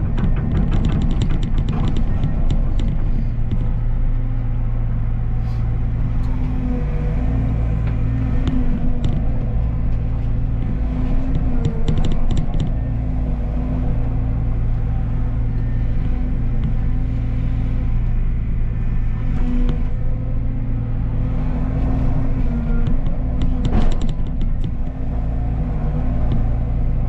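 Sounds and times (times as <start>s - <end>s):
metallic clicks and clanks: 0.0s - 3.8s, 22.8s - 25.0s
diesel engine running under load: 0.0s - 27.0s.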